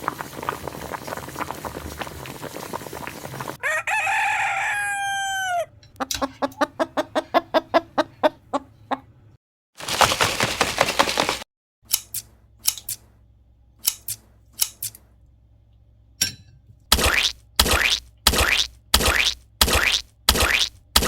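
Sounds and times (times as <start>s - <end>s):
rooster crowing: 3.6s - 5.8s
chicken clucking rapidly: 3.6s - 9.2s, 9.8s - 11.4s.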